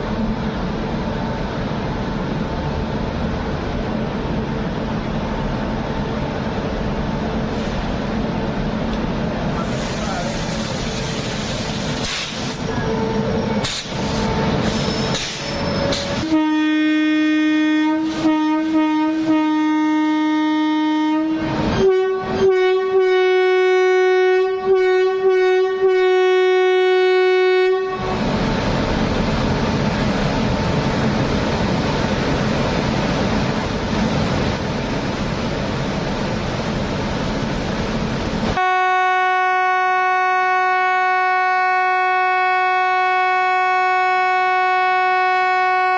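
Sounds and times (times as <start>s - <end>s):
train rumble: 0.0s - 45.9s
locomotive horn blaring: 16.0s - 28.3s, 38.6s - 45.9s.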